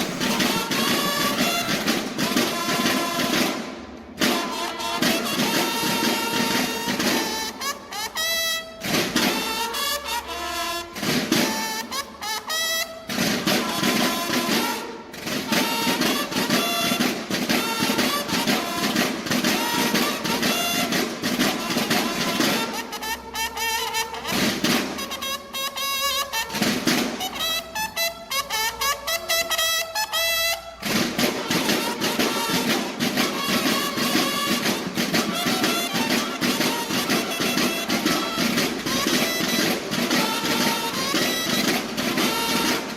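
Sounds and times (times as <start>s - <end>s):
bugles sounding short notes: 0.0s - 42.9s
marching snare drums: 0.0s - 42.9s.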